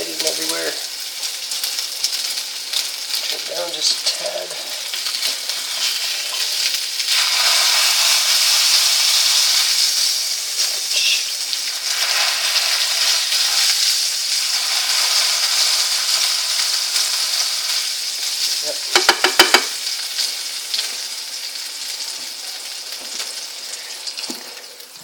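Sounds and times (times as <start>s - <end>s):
meat and onions sizzling in a pan: 0.0s - 25.0s.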